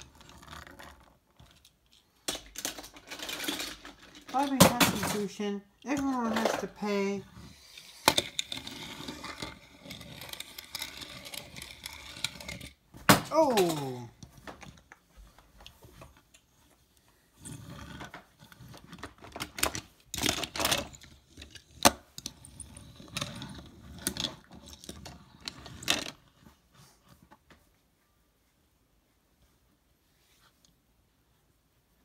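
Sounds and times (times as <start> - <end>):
toy cars clattering: 0.0 - 14.8, 17.8 - 26.3.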